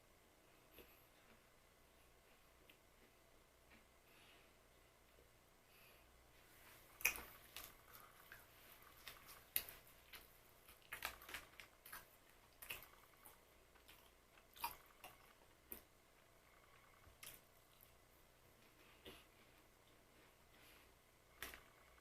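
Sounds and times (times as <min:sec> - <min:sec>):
biscuits crunching while chewed: 0:06.8 - 0:15.9.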